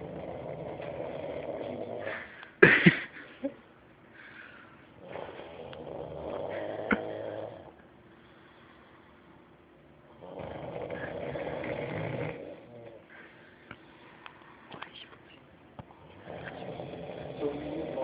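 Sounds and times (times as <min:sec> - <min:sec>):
person snoring: 0:00.0 - 0:02.4, 0:05.0 - 0:07.8, 0:10.2 - 0:13.2, 0:16.1 - 0:18.0.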